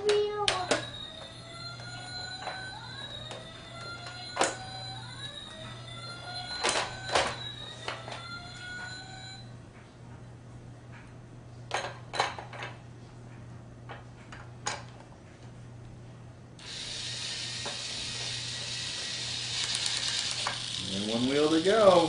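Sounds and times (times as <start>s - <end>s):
toy drill running: 16.6s - 22.0s
plastic toy parts clicking: 19.5s - 20.8s.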